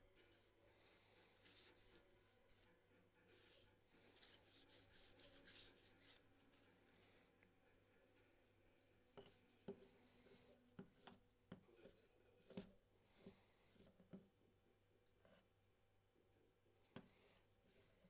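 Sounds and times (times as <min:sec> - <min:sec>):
rubbing and scraping strokes: 0:00.2 - 0:07.8.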